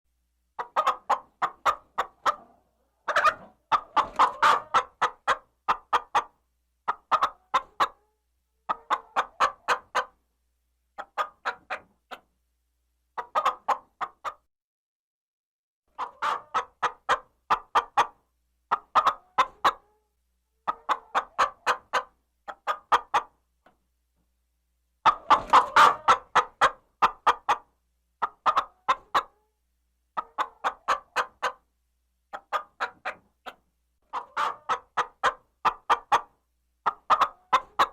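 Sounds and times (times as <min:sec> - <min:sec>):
chicken clucking: 0:00.6 - 0:10.2, 0:10.9 - 0:12.3, 0:13.1 - 0:14.5, 0:15.9 - 0:23.8, 0:25.0 - 0:31.7, 0:32.3 - 0:37.9.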